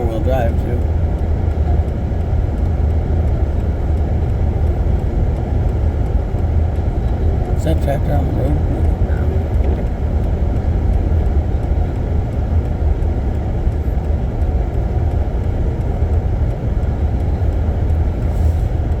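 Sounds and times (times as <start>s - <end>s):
car rumbling on snowy road: 0.0s - 19.0s.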